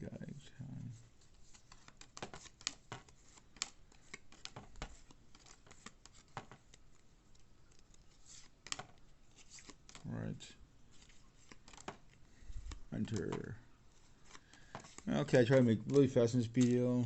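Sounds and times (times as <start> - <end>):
cards clicking and sliding: 1.3 - 10.2, 10.9 - 17.0.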